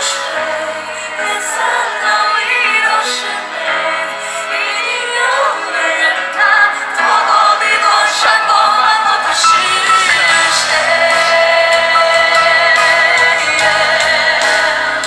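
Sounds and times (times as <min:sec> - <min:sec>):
woman singing pop ballad: 0:00.0 - 0:15.0
sharp percussion hits: 0:09.3 - 0:15.0.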